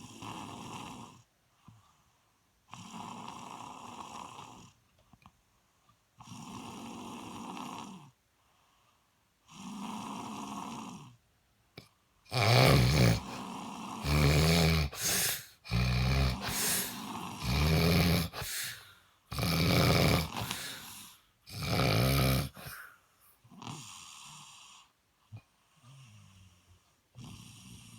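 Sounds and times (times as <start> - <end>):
person snoring loudly: 12.3 - 23.0
soft breaths: 12.4 - 23.4.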